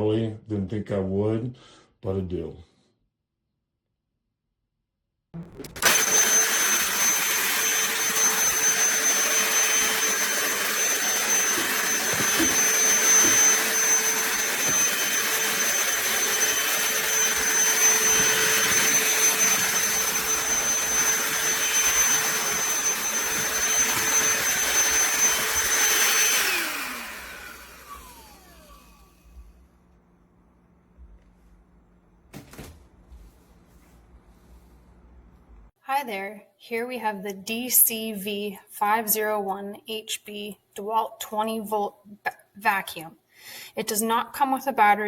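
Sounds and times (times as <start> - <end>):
handheld vacuum whining: 5.4 - 29.9
vacuum motor spinning down: 5.4 - 29.9.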